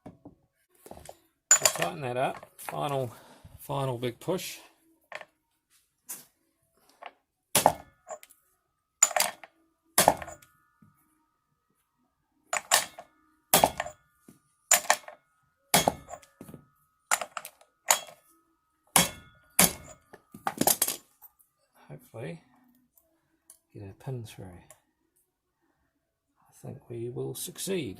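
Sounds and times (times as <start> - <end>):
sharp metal knocks with ring: 15.7 - 16.6.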